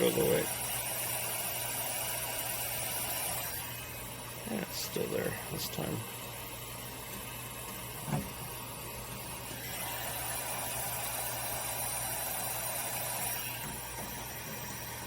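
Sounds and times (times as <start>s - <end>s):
heat gun blowing: 9.5s - 15.0s.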